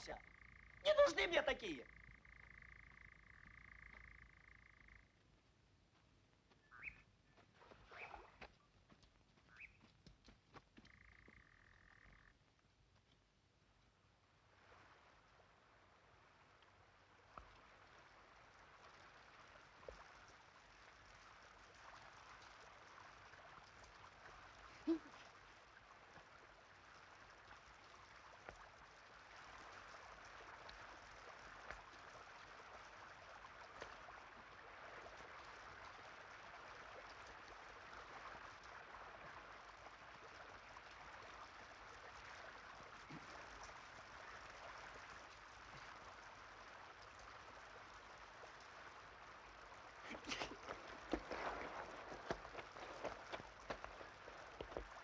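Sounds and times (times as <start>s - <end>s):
faint hiss of water: 13.9s - 55.0s.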